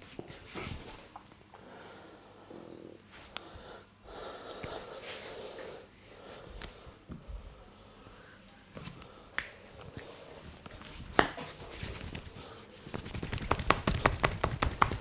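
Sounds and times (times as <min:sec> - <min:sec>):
hands slapping on skin: 0:12.9 - 0:15.0.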